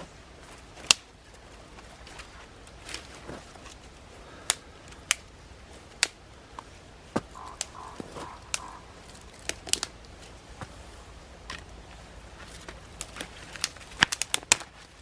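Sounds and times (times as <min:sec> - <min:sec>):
sharp clicks and snaps: 0:07.4 - 0:09.9, 0:13.0 - 0:14.7.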